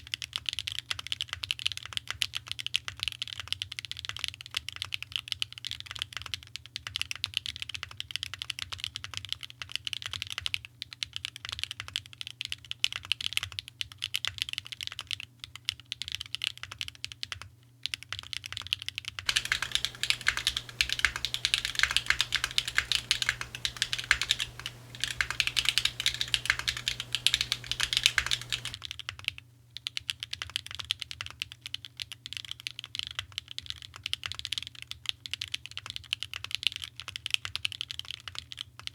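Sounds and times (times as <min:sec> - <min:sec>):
mechanical keyboard key clacks: 0:19.3 - 0:28.8.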